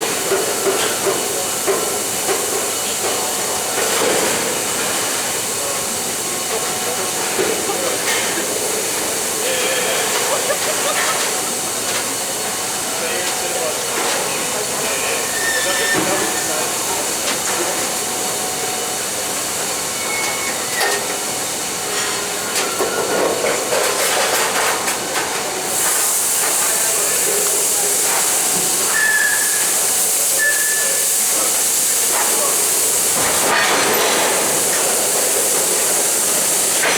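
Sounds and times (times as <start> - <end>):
train wagon knocks and clanks: 0.0 - 12.6, 13.2 - 36.9
steady hiss: 0.0 - 23.7, 24.4 - 36.9
high metallic squeals: 15.3 - 16.5.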